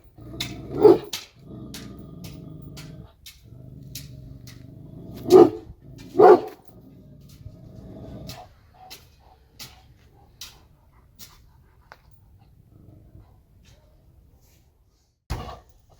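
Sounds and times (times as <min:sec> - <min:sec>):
dog barking: 0:00.7 - 0:01.1, 0:05.2 - 0:06.7.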